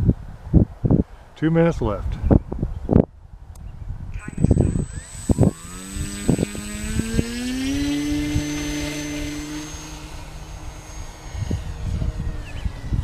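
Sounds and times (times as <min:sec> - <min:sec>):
wind buffeting microphone: 0:00.0 - 0:13.0
electric model plane motor whining: 0:04.2 - 0:13.0.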